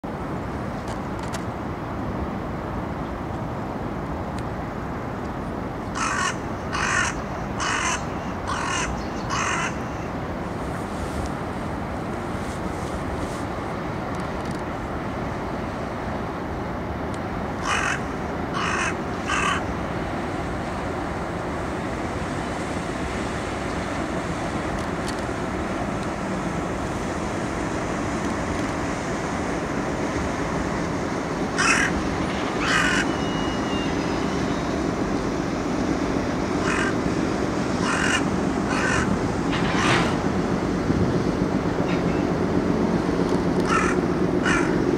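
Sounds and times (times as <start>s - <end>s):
crow cawing: 6.0s - 9.8s, 17.6s - 19.7s, 31.6s - 32.0s, 32.6s - 33.8s, 36.6s - 37.0s, 37.8s - 39.1s, 43.7s - 44.8s.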